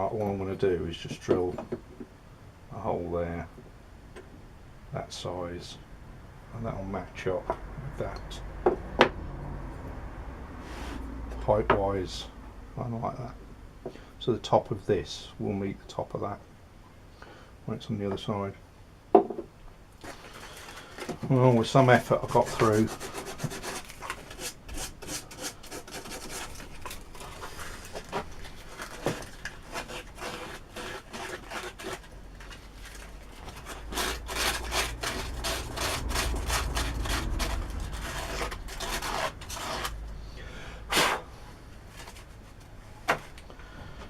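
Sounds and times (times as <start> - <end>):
hand tool scraping wood: 20.0 - 40.1.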